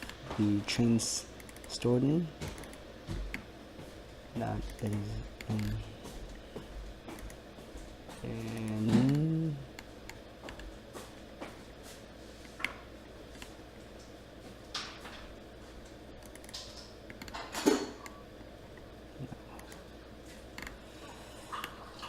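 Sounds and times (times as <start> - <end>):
steady low hum: 0.0 - 22.0
computer mouse clicks: 1.4 - 1.7, 4.6 - 5.8, 7.1 - 7.4, 16.2 - 17.4, 20.6 - 20.8.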